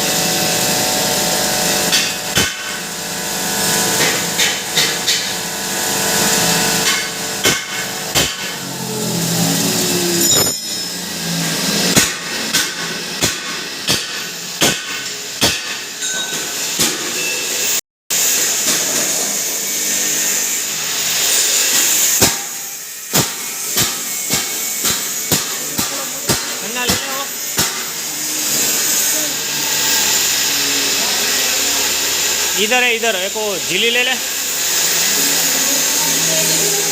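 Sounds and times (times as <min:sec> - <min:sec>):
sharp knocks and clatter: 0:04.0 - 0:05.4.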